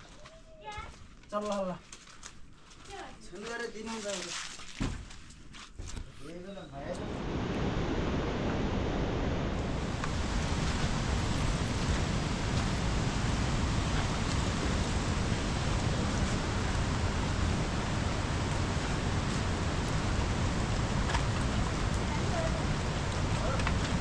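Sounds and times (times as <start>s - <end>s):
heavy rain hissing: 7.0s - 24.0s
raindrop ticks: 19.7s - 24.0s.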